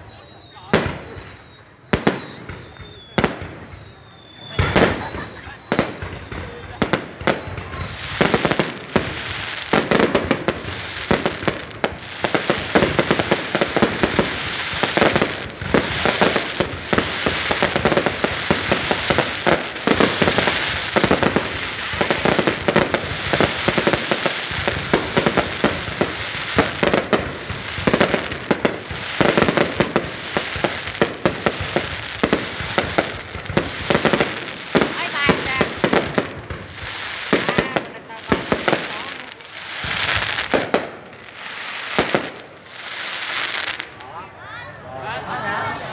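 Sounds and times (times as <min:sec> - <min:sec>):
fireworks crackling and banging: 0:00.0 - 0:45.9.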